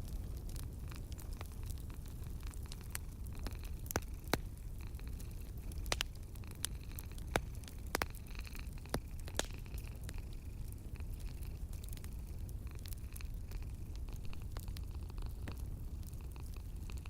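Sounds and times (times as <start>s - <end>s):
low fire rumble: 0.0s - 17.0s
wood fire crackling and popping: 0.0s - 17.0s.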